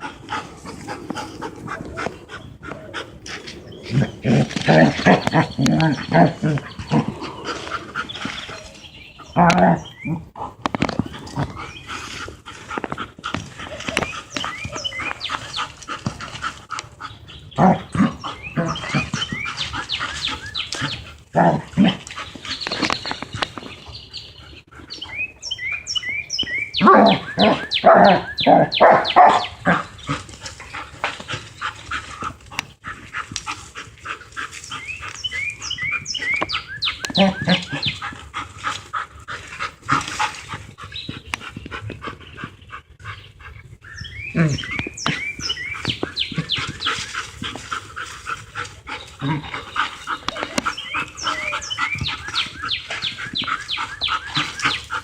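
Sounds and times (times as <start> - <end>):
dog barking: 26.8 - 29.6.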